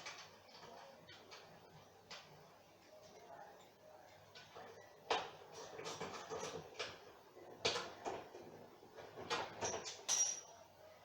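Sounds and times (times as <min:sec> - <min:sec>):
tools knocking and clinking: 0:09.2 - 0:10.5.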